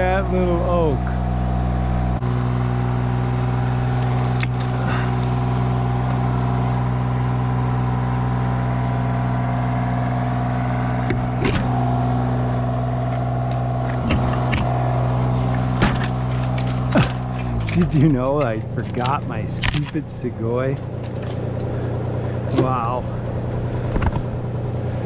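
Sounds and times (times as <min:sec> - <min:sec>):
engine running steadily: 0:00.0 - 0:25.0.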